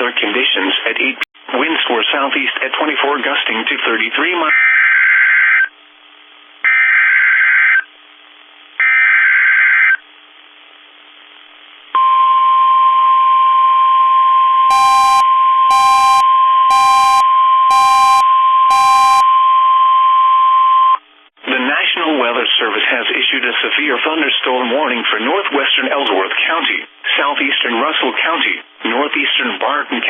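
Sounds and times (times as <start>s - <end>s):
pulsing beep: 12.0s - 21.0s
steady warning alarm tone: 12.0s - 21.0s.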